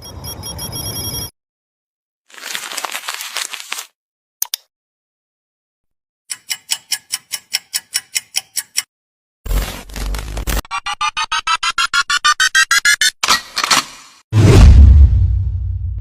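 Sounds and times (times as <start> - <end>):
rapid sharp ticks: 6.3 - 8.9
loud burst with low rumble: 14.4 - 16.0.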